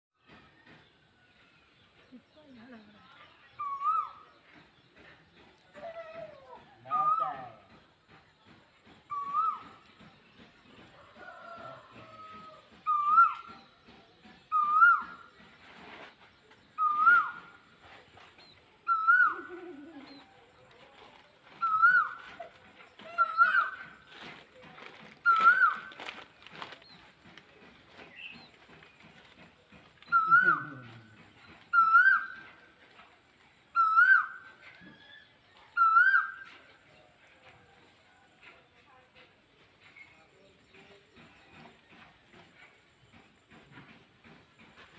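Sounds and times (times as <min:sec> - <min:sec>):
fainter lower bird calls: 0:02.7 - 0:07.7, 0:09.0 - 0:10.2, 0:11.0 - 0:13.8, 0:14.5 - 0:27.1, 0:29.9 - 0:33.0, 0:33.7 - 0:38.6
bird whistled call: 0:03.6 - 0:04.2, 0:06.9 - 0:07.6, 0:09.1 - 0:10.0, 0:12.8 - 0:13.7, 0:14.5 - 0:15.3, 0:16.8 - 0:17.6, 0:18.8 - 0:20.2, 0:21.6 - 0:22.4, 0:25.2 - 0:25.9, 0:30.0 - 0:31.0, 0:31.7 - 0:32.6, 0:33.7 - 0:36.7.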